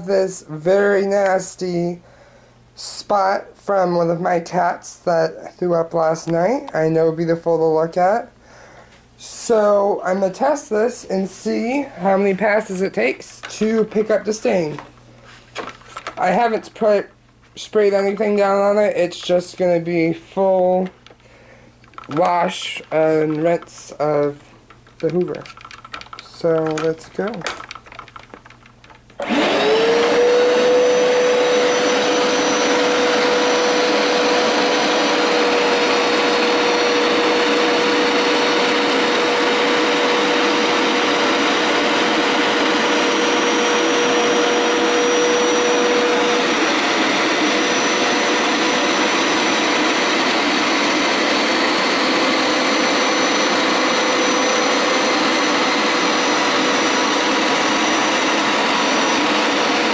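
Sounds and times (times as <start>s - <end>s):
carpet washer running: 25.0s - 59.9s.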